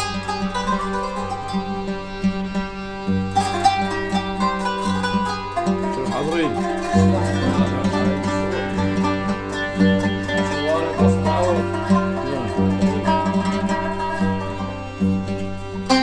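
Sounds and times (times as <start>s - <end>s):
plucked qanun: 0.0s - 16.0s
violins: 0.0s - 16.0s
low drone: 5.9s - 15.9s.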